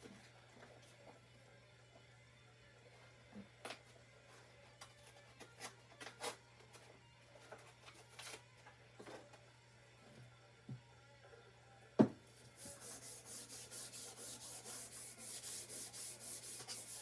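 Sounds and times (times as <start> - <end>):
sandpaper rubbing metal: 12.6 - 17.0.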